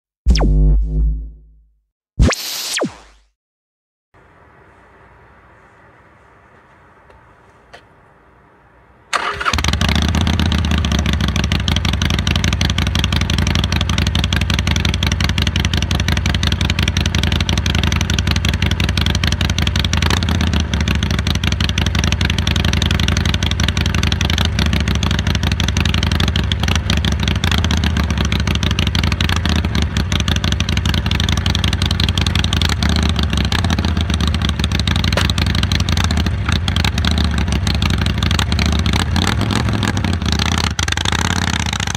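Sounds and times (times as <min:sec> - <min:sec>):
motorcycle engine running: 0:09.2 - 0:41.9.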